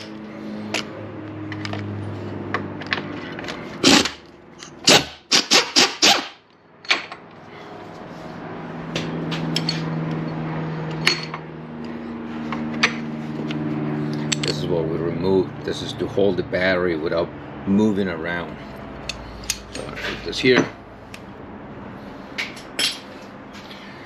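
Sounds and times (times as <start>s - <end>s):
steady low hum: 6.6s - 24.0s.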